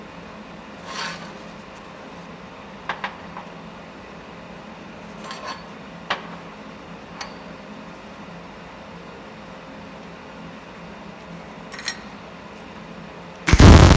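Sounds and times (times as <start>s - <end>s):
steady low hum: 13.5s - 13.9s.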